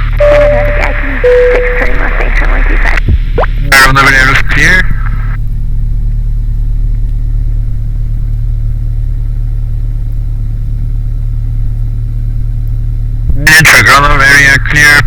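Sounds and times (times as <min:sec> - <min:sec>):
aircraft piston engine droning: 0:04.1 - 0:13.2.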